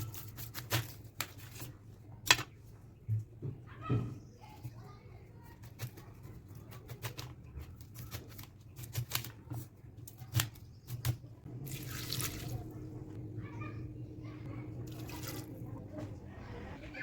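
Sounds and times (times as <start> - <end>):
low steady hum: 11.3 - 17.0.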